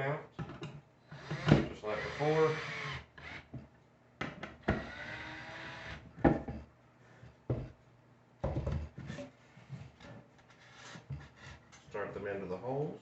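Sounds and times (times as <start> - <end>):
power drill driving screws: 1.1 - 3.5, 4.6 - 6.0
knocks and clunks of wood: 6.2 - 6.7, 8.4 - 9.2.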